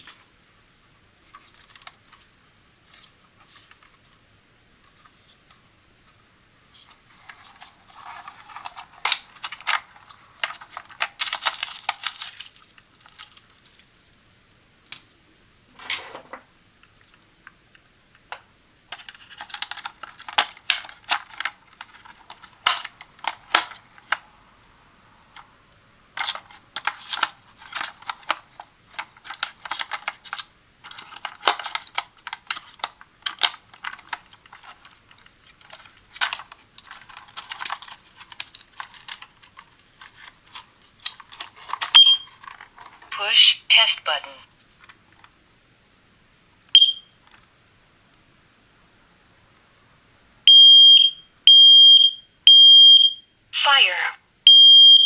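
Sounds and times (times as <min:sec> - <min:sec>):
packaging rustling: 0:06.8 - 0:14.2, 0:18.9 - 0:24.2, 0:26.2 - 0:43.2.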